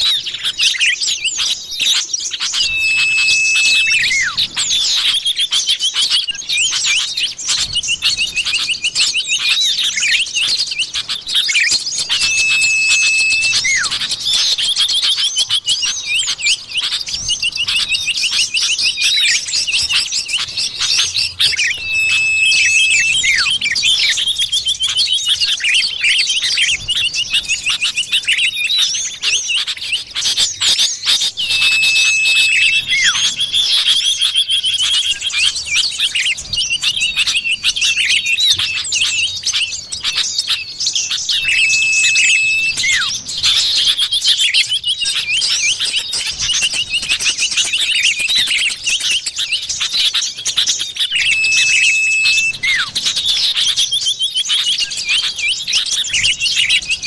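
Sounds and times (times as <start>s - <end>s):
small birds chirping and trilling: 0.0s - 57.0s
long level whistle: 2.4s - 5.1s, 11.5s - 14.9s, 18.1s - 25.0s, 31.0s - 34.3s, 41.2s - 43.7s, 51.0s - 53.2s.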